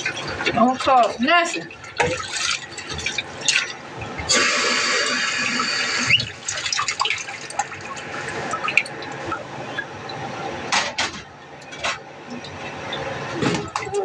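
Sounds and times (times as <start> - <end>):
kitchen tap running: 0.0 - 10.3.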